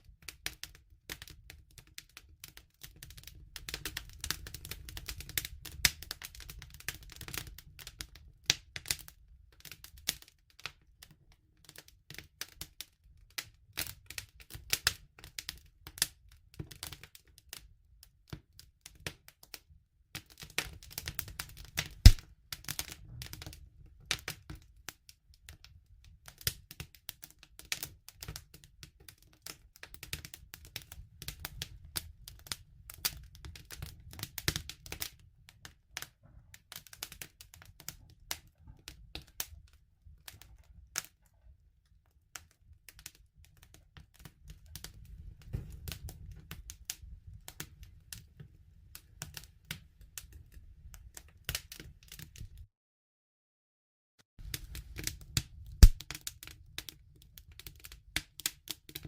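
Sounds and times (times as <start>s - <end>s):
campfire crackling: 21.0s - 23.5s, 54.4s - 56.3s.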